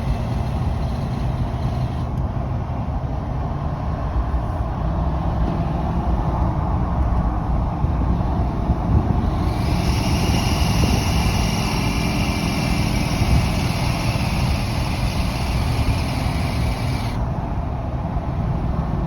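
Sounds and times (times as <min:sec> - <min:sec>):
diesel engine and road rumble: 0:00.0 - 0:19.0
exhaust brake squealing: 0:08.2 - 0:17.3.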